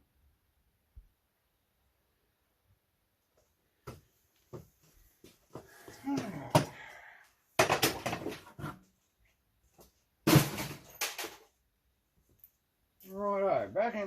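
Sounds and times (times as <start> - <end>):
hard objects knocking and clattering: 7.6 - 8.8.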